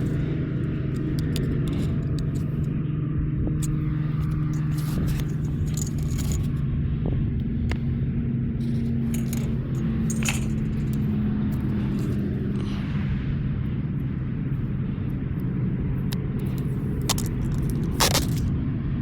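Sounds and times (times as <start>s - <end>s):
engine humming: 0.0s - 19.0s
small objects jingling: 4.2s - 6.6s, 8.6s - 12.2s, 17.0s - 18.5s.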